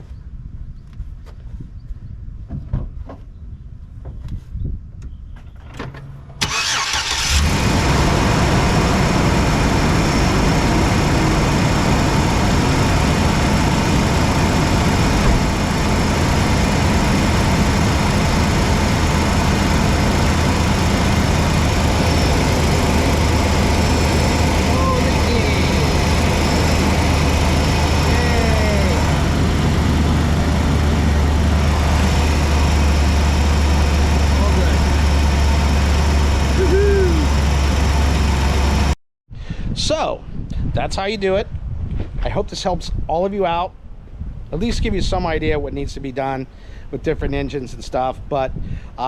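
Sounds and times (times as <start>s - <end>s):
van engine starting and idling: 6.4s - 39.0s.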